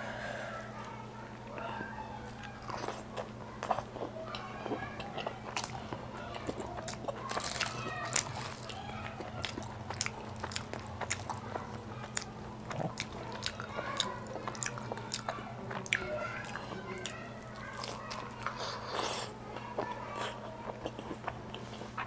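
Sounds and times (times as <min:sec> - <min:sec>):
person chewing: 0:02.3 - 0:22.0.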